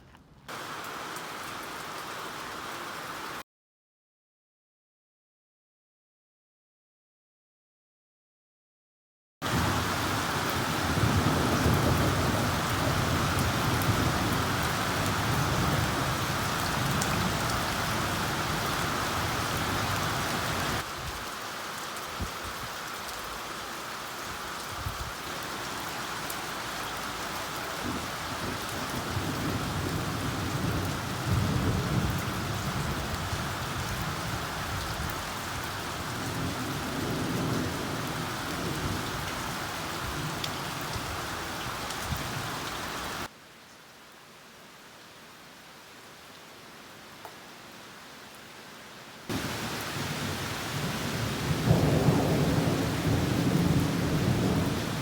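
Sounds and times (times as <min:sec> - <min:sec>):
heavy rain pouring: 0:00.5 - 0:03.4, 0:09.4 - 0:43.3, 0:44.1 - 0:55.0
low thunder rumbling: 0:27.8 - 0:34.3, 0:49.3 - 0:55.0.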